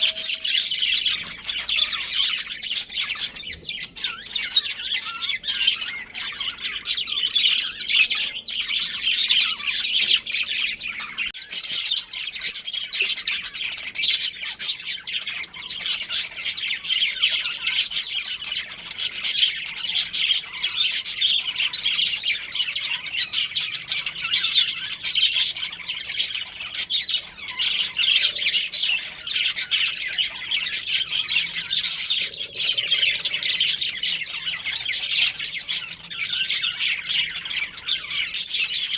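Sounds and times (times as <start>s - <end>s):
budgerigars chirping and warbling: 0.0s - 38.9s.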